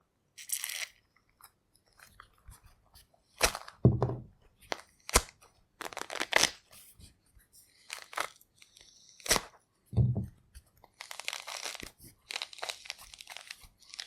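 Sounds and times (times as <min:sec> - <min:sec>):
soft handling noises: 0:01.2 - 0:03.2
dull thump: 0:03.8 - 0:04.3, 0:10.0 - 0:10.4
orange peel tearing: 0:11.0 - 0:14.0.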